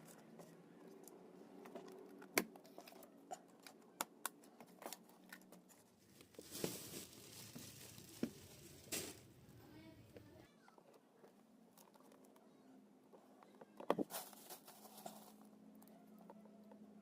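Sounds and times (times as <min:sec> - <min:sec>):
packaging crinkling and tearing: 0:04.6 - 0:09.3.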